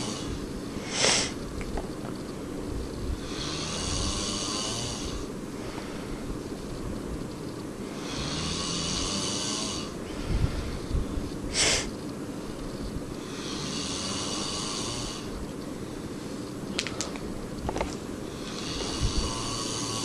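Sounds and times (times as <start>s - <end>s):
man snoring: 0.0s - 1.4s, 3.2s - 5.3s, 7.9s - 10.2s, 11.5s - 11.9s, 13.2s - 15.3s, 18.3s - 20.0s.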